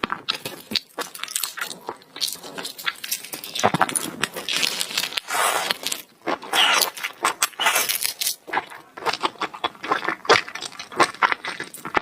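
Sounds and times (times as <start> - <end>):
slurping: 5.0 - 8.2.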